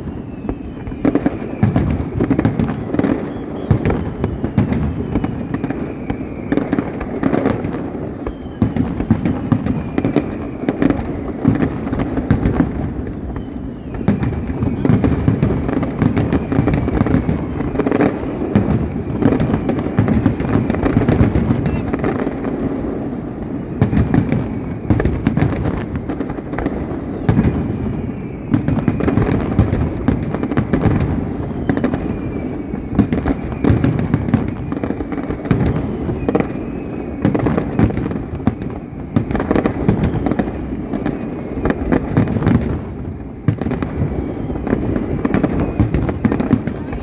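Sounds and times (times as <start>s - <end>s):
fireworks bangs and crackles: 0.0s - 47.0s.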